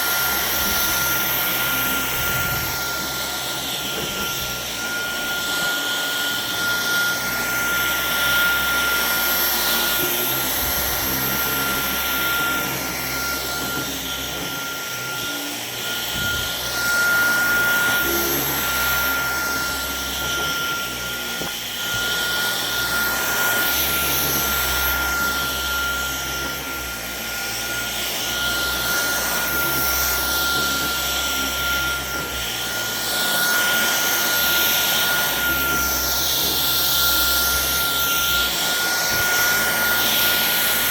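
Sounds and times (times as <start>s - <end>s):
vacuum cleaner motor whine: 0.0s - 40.9s
vacuum suction rushing on carpet: 0.0s - 40.9s.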